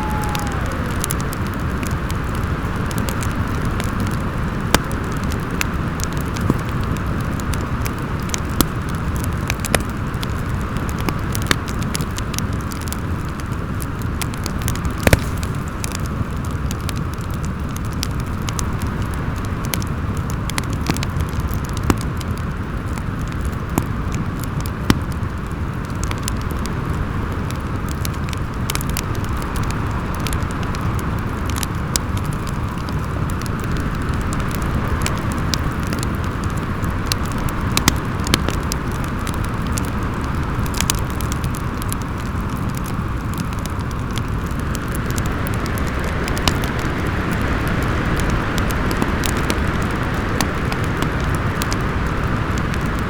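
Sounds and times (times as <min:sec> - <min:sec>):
storm wind howling: 0:00.0 - 0:03.2
fireplace crackling and popping: 0:00.0 - 0:53.0.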